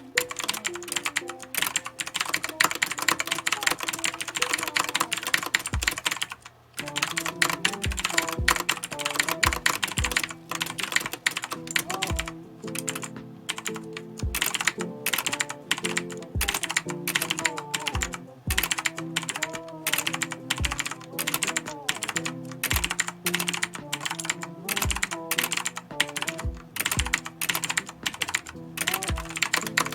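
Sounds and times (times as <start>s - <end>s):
mechanical keyboard clicks: 0.2s - 29.9s
background music with a beat: 5.7s - 6.0s, 6.8s - 29.9s.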